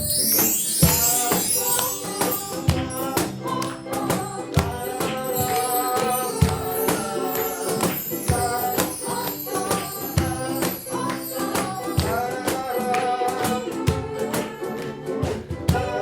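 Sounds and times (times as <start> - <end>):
ukulele ensemble music: 0.0 - 16.0.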